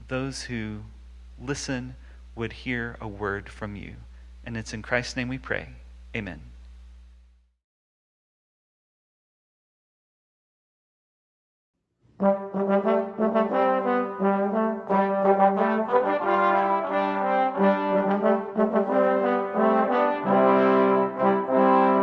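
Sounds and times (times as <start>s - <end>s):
brass ensemble chords: 12.2s - 22.0s.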